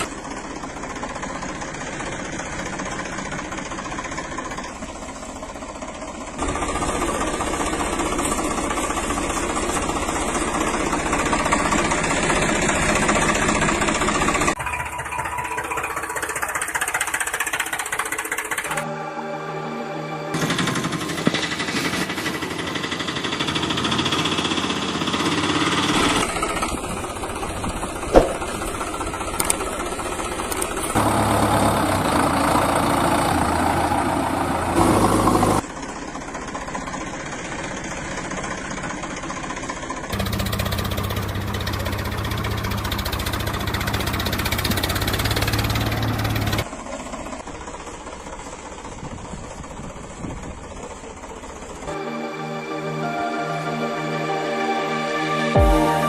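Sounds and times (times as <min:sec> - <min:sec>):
engine idling and running: 0:00.0 - 0:19.4, 0:20.3 - 0:55.0.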